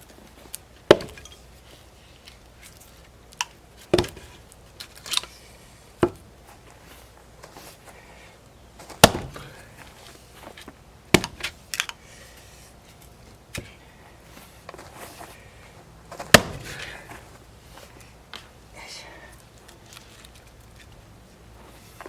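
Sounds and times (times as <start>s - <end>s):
axe splitting firewood: 0.2s - 7.9s, 8.6s - 13.8s, 16.1s - 18.5s
wood cracking: 0.5s - 1.5s, 8.8s - 12.0s, 16.1s - 17.4s.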